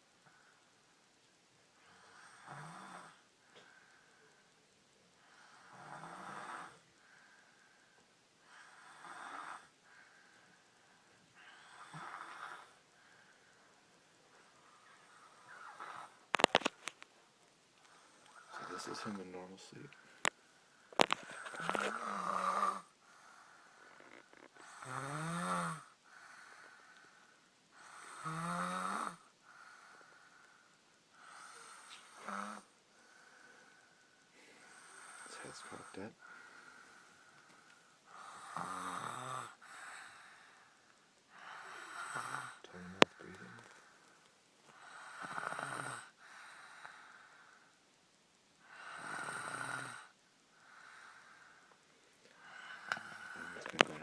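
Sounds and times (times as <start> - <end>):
quiet breathing: 0.0 - 54.0
person snoring: 5.5 - 6.8, 11.4 - 12.8, 18.3 - 19.2, 21.0 - 22.9, 24.0 - 25.9, 27.8 - 29.2, 31.2 - 32.7, 38.1 - 40.1, 48.6 - 50.2, 52.4 - 54.0.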